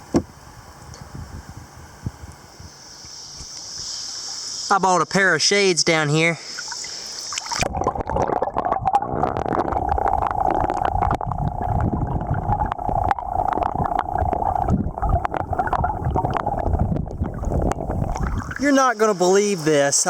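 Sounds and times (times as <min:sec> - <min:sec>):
river water rushing and gurgling: 0:12.9 - 0:19.8.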